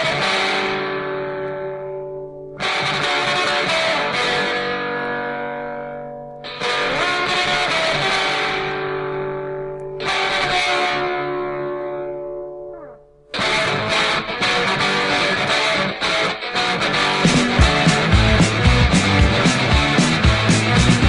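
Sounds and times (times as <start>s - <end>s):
electric guitar chords ringing: 0.0s - 21.0s
full band playing: 17.2s - 21.0s.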